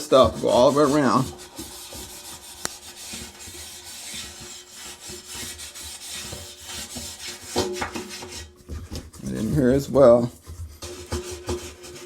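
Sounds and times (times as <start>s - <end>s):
toothbrush scrubbing rubber seal: 0.0s - 8.3s.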